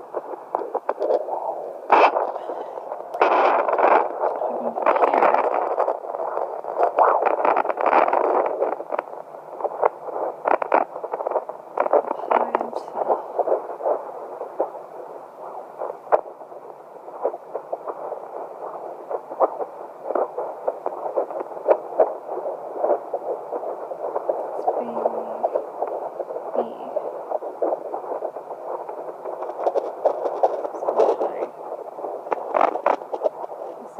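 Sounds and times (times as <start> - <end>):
doppler speaker hissing and crackling: 0.0 - 33.9
whooshing heartbeat pulses: 0.1 - 12.2.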